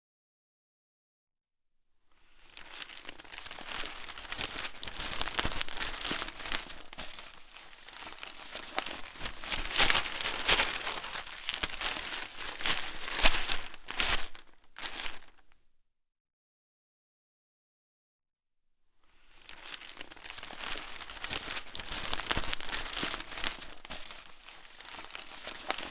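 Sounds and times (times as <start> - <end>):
newspaper pages rustling: 2.2 - 15.6, 19.2 - 25.9
sharp paper snaps: 2.6 - 15.4, 19.5 - 25.9.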